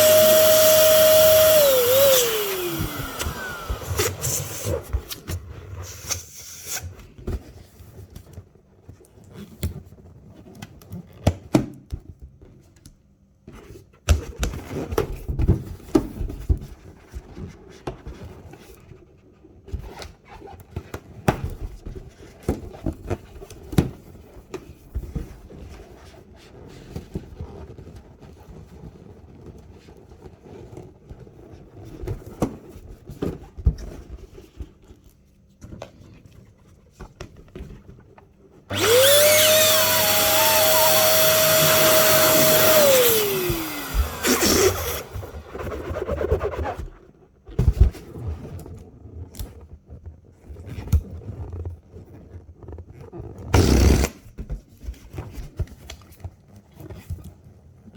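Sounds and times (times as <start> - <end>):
electric balloon pump whine: 0.0 - 4.9, 38.7 - 45.5, 53.6 - 54.2
rubber balloons being handled: 0.0 - 57.9.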